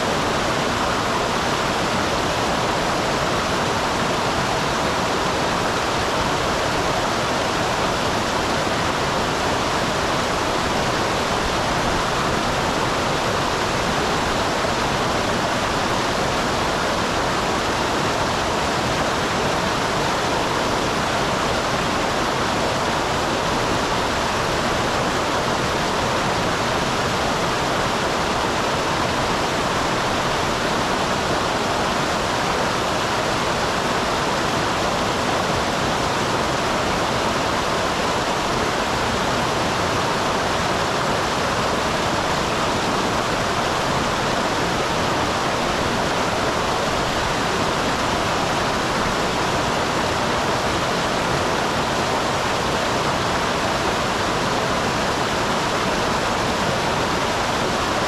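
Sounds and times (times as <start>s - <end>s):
water pouring and rushing: 0.0s - 58.0s.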